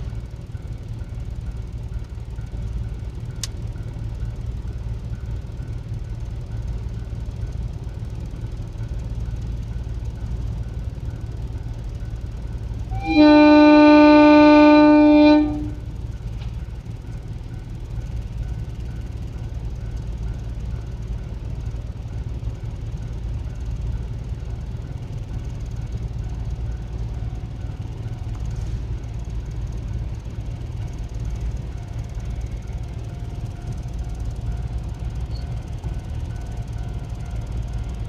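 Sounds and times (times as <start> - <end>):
low rumble of train: 0.0 - 38.0
horn: 13.0 - 15.8.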